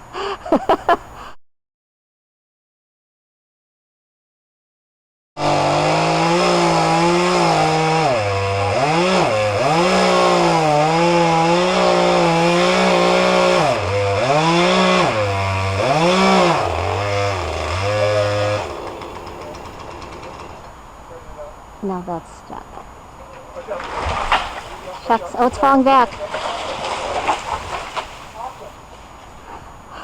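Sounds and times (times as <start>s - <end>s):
chainsaw revving: 5.4s - 21.0s, 24.3s - 25.8s, 26.4s - 28.7s.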